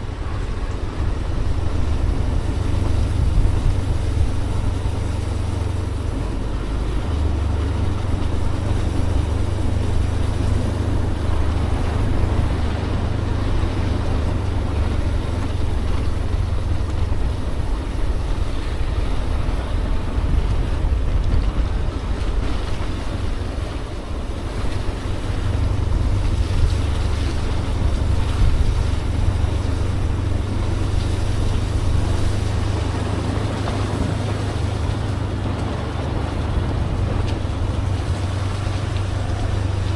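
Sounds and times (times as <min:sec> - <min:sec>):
wind buffeting microphone: 0:00.0 - 0:39.9
motorbike engine running: 0:24.5 - 0:39.9.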